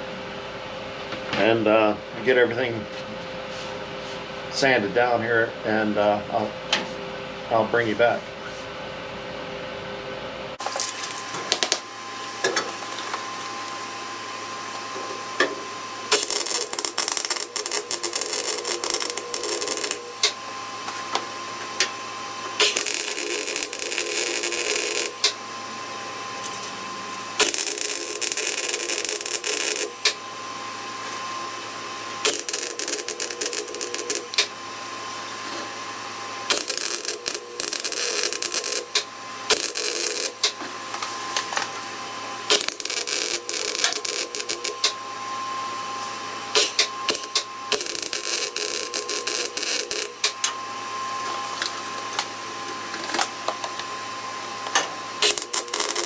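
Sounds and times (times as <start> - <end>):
welding arc crackling and sizzling: 10.6 - 53.9, 54.7 - 56.0.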